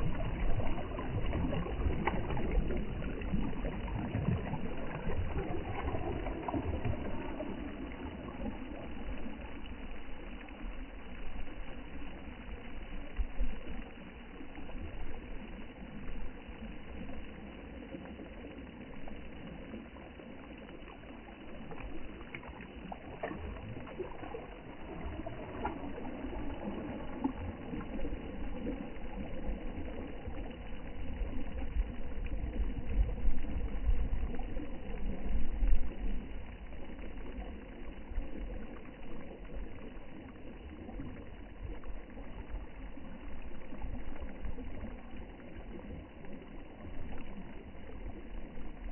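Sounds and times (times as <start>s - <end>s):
sea water sloshing: 0.0s - 10.2s, 21.1s - 48.9s.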